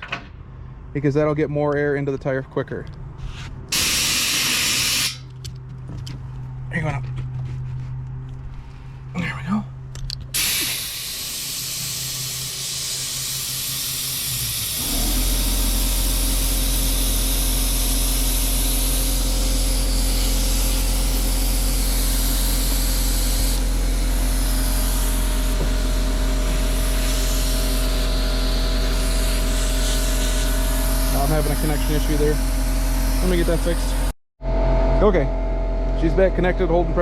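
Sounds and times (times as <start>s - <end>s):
compressed air hissing into tire: 3.3s - 5.3s, 10.3s - 34.0s
air compressor humming: 3.7s - 5.4s, 10.3s - 34.2s.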